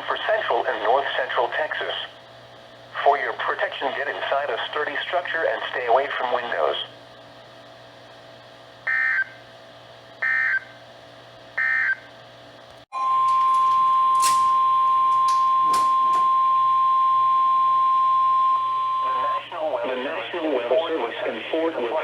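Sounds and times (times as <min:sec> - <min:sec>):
steady warning alarm tone: 0:08.9 - 0:09.4, 0:10.2 - 0:10.8, 0:11.6 - 0:12.1, 0:12.9 - 0:19.4.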